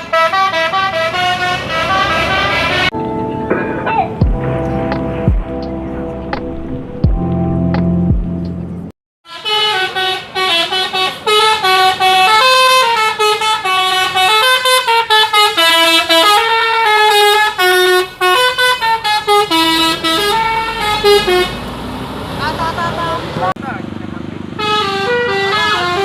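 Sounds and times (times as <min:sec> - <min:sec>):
multi-tone musical air horn melody: 0:00.0 - 0:03.0, 0:09.3 - 0:21.6, 0:24.6 - 0:26.0.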